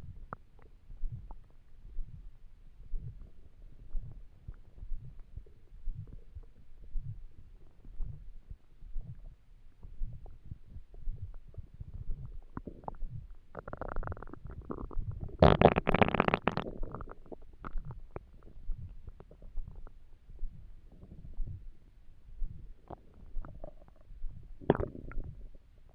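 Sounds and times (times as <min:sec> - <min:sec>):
stomach growling: 0:09.0 - 0:21.6, 0:22.5 - 0:25.9.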